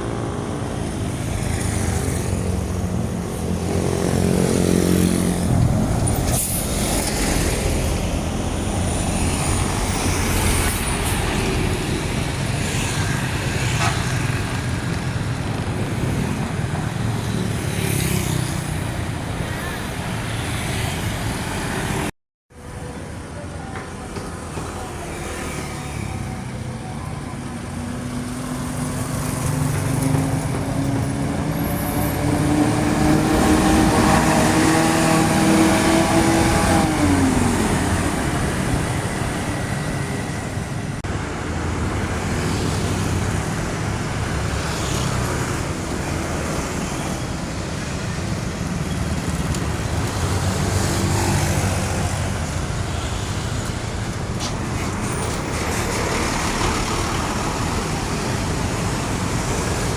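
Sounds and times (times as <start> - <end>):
road traffic: 0.0 - 59.9
diesel engine passing: 27.6 - 52.9.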